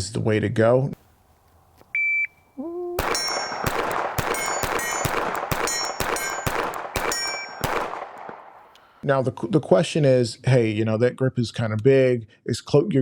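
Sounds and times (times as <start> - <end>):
shot timer beep: 2.0 - 2.3
steel plate ringing: 3.0 - 7.7
pistol shots: 3.0 - 8.7.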